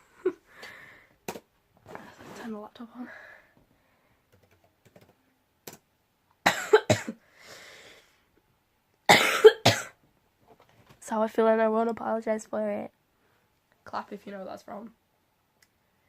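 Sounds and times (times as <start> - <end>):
breath: 0.5 - 1.2, 3.0 - 4.2, 7.2 - 8.3, 13.2 - 13.5
woman coughing: 6.4 - 7.2, 9.1 - 10.0.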